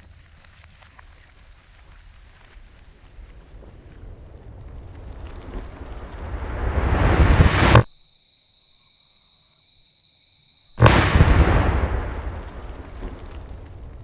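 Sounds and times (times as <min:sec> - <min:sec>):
target explosion blast: 0:04.1 - 0:07.9, 0:10.8 - 0:14.0
rising rush of noise: 0:04.9 - 0:07.9.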